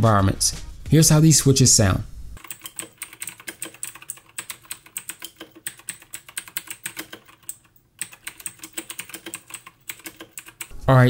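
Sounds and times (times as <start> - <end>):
mechanical keyboard typing clicks: 2.4 - 10.7.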